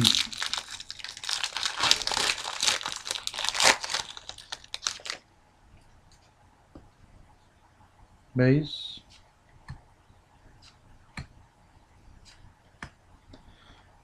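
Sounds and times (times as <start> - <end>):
wrapper tearing and crinkling: 0.0 - 5.2.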